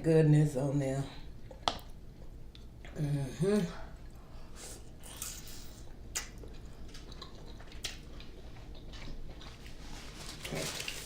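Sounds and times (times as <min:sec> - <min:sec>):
wet squishes of food eating: 0:05.0 - 0:11.0.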